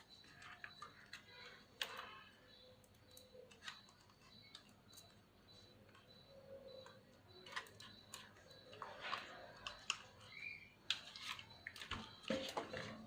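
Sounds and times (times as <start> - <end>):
sharp clicks of laptop parts: 0.0 - 12.2
crinkly handling noise: 7.4 - 13.0.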